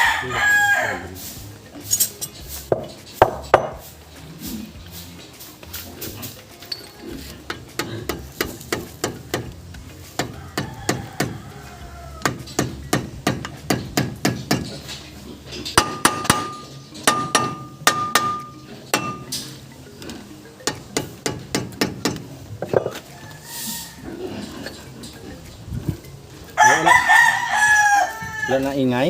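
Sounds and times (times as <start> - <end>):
hammer blows on metal: 15.8 - 19.5.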